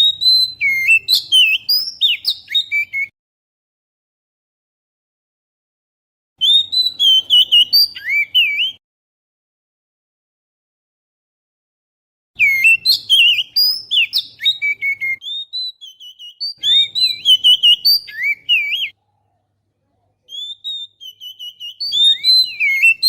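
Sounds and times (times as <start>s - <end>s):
bird song with varied whistles: 0.0s - 3.1s, 6.4s - 8.8s, 12.4s - 19.0s, 20.2s - 23.0s.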